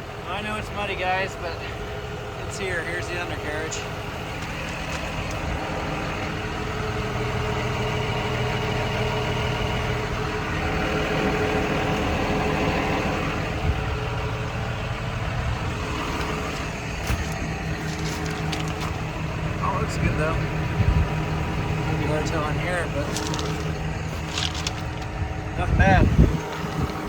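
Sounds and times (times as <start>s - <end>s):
excavator diesel engine idling: 0.0s - 27.0s.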